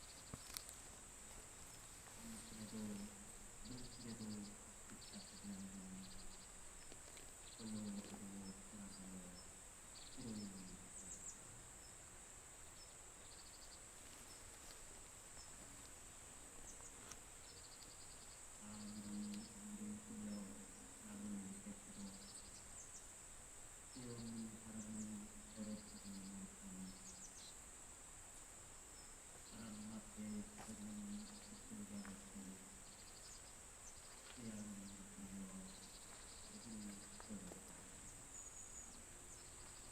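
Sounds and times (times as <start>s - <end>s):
crickets buzzing and chirping: 0.0s - 39.9s
low voice chanting prayers: 0.8s - 12.1s, 18.5s - 23.0s, 23.9s - 27.6s, 29.4s - 33.1s, 34.1s - 39.9s.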